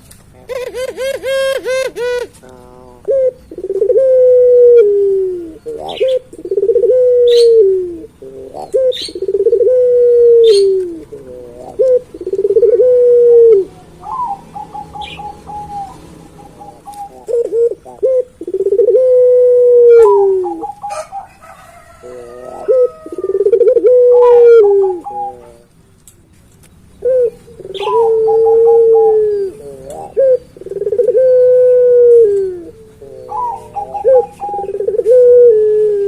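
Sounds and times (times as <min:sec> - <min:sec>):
dove cooing long deep coos: 0:00.4 - 0:25.8, 0:27.0 - 0:36.0.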